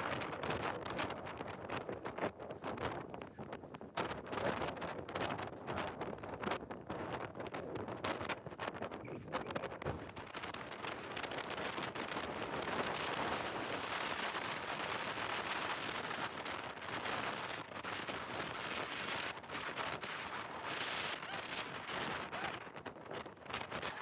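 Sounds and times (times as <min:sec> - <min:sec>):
strong wind buffeting microphone: 0:00.0 - 0:24.0
sharp crackles: 0:07.8 - 0:24.0.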